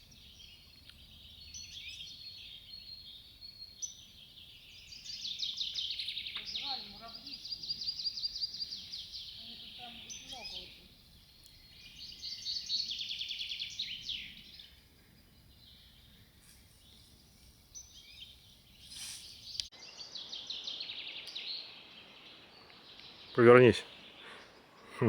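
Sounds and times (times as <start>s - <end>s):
songbirds singing: 0.0s - 25.0s
short rustle: 16.4s - 17.6s, 18.8s - 19.7s.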